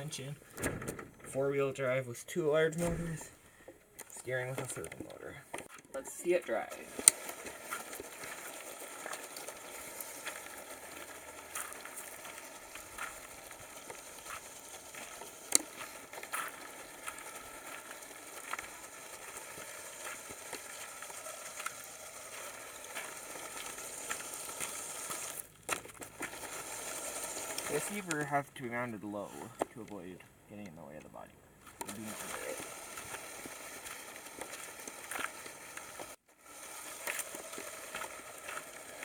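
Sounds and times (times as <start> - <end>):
toy truck tyres rustling: 0.0 - 39.0.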